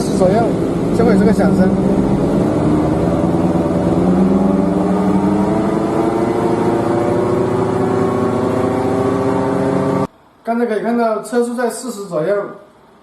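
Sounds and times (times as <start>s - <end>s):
road noise: 0.0s - 10.1s
wheel bearing droning: 0.0s - 10.1s.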